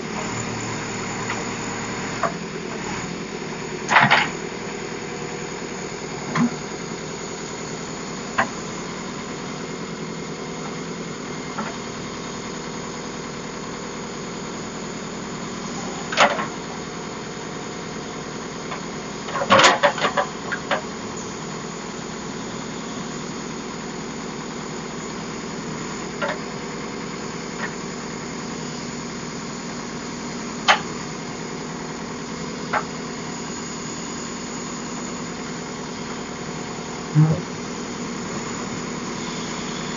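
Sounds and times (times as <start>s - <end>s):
heavy diesel engine running: 0.0s - 39.9s
sharp clanks and knocks: 19.4s - 20.8s.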